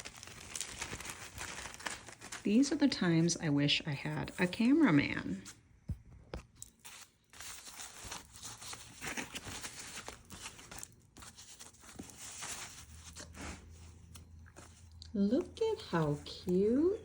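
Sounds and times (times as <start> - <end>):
packaging rustling and tearing: 0.0 - 3.1, 6.6 - 14.8.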